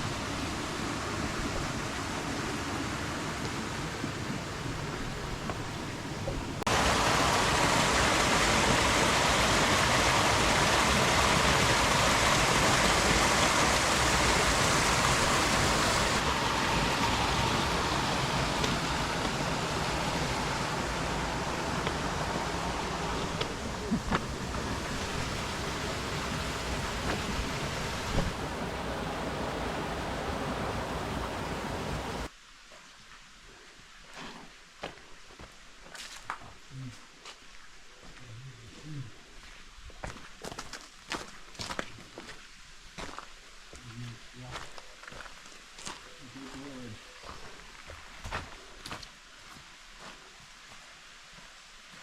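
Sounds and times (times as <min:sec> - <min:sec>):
waterfall rushing: 0:00.0 - 0:32.3.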